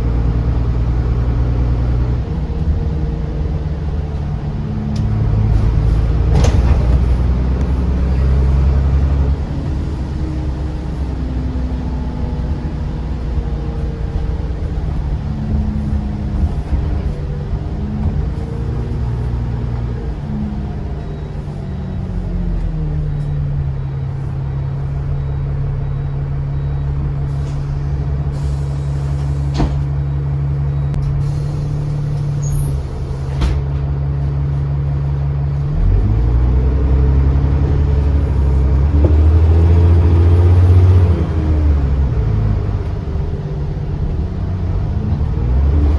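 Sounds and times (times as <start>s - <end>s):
bus diesel engine: 0.0s - 45.9s.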